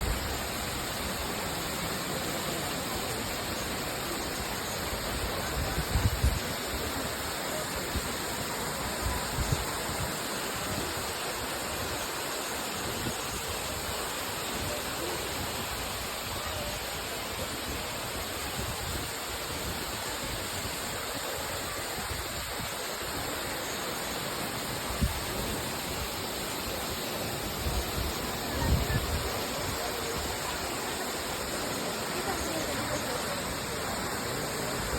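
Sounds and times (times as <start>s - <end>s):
waterfall rushing: 0.0s - 34.9s.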